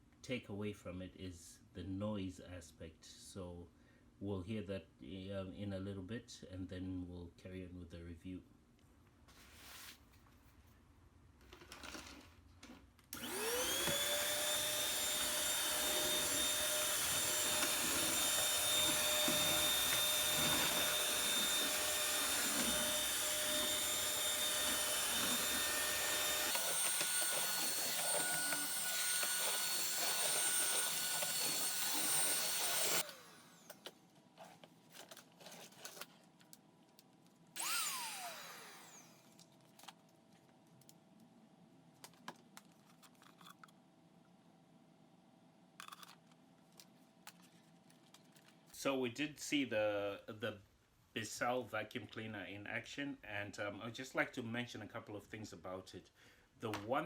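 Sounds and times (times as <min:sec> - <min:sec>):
vacuum cleaner motor whining: 0:13.2 - 0:33.9, 0:37.6 - 0:39.4.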